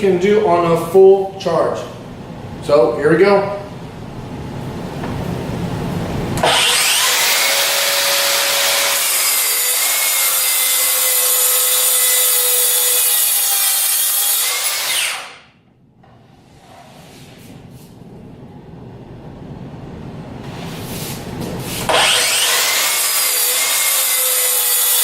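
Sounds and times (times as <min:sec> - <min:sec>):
track saw cutting plywood: 0:06.4 - 0:15.4, 0:21.8 - 0:25.0.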